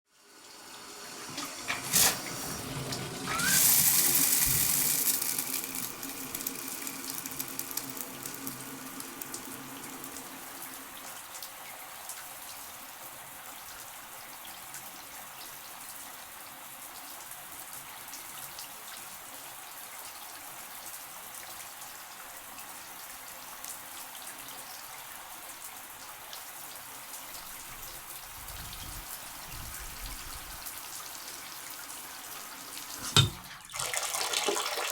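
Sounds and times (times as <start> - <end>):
shower water running: 0.1 - 34.9
brief rising squeal: 3.3 - 4.0
shower tap click: 33.0 - 33.5.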